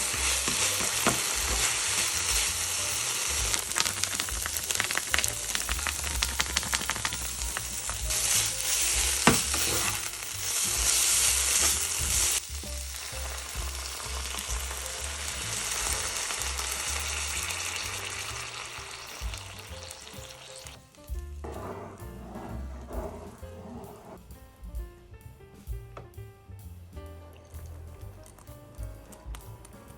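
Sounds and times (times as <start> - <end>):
utensil knocking on pan: 0.0 - 14.9
food sizzling in a pan: 0.0 - 21.2
stirring in a pan: 0.0 - 24.2
music: 0.0 - 29.9.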